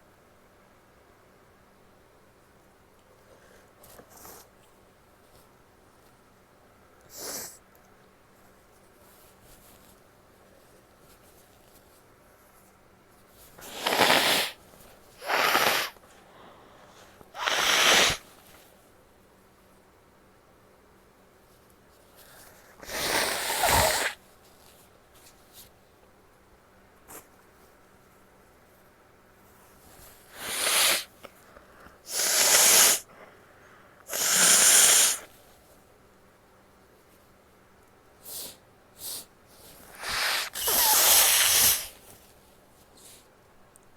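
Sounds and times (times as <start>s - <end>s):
woman blowing air through nose: 13.6s - 14.6s, 15.2s - 16.0s, 17.3s - 18.3s, 22.8s - 24.2s, 30.3s - 31.1s, 32.1s - 33.1s, 34.1s - 35.3s, 39.9s - 42.0s.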